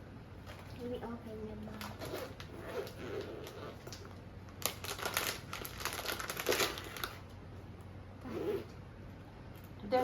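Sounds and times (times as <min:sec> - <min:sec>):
bag packaging crinkling: 0:04.6 - 0:07.2.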